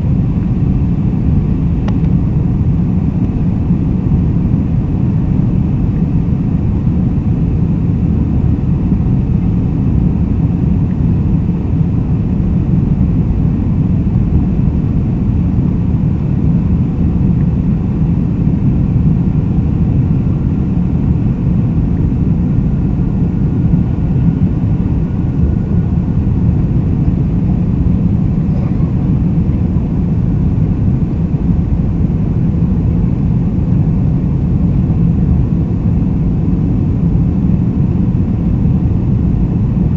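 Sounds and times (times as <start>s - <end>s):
jet engines rumbling in cabin: 0.0s - 39.9s.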